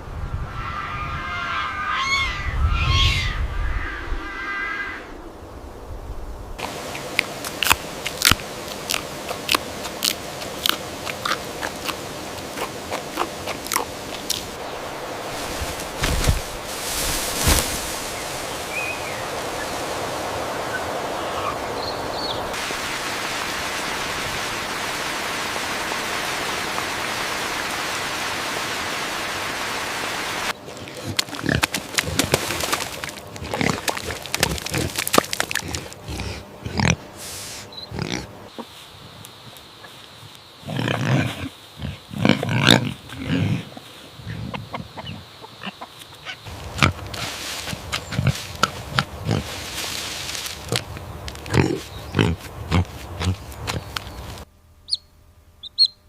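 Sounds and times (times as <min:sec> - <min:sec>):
steady rushing noise: 0:13.9 - 0:30.6
pigs grunting: 0:30.7 - 0:37.1, 0:37.8 - 0:38.6, 0:40.6 - 0:49.7, 0:50.6 - 0:54.0.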